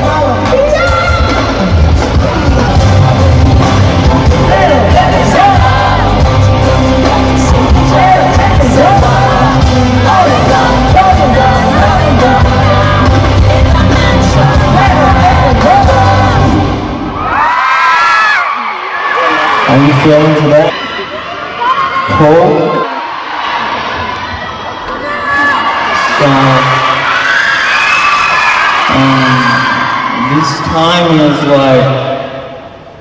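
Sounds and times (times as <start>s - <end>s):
live pop hip-hop music: 0.0s - 17.0s
fans yelling and whooping: 17.0s - 32.0s.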